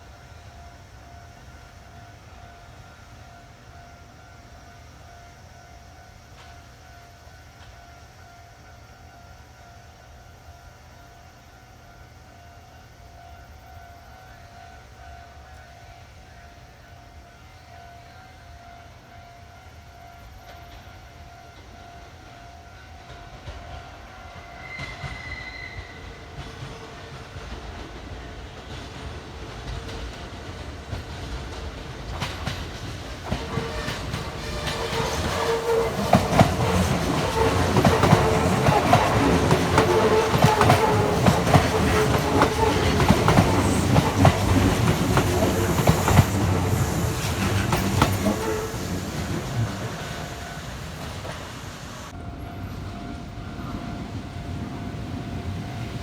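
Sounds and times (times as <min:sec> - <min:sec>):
train wheels clattering on rails: 0:20.3 - 0:56.0
high train horn: 0:21.0 - 0:27.1, 0:33.1 - 0:55.6.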